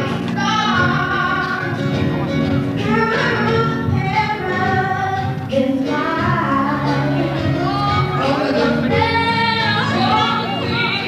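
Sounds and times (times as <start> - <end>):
instrumental backing music: 0.0 - 11.0
group of voices singing: 2.9 - 11.0.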